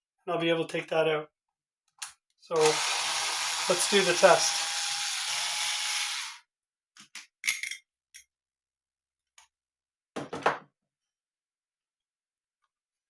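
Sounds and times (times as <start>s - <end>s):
power screwdriver whirring: 2.6s - 6.4s.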